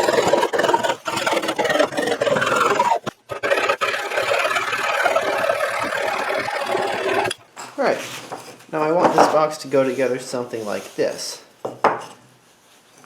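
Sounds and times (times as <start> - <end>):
hand saw cutting wood: 0.0 - 7.4.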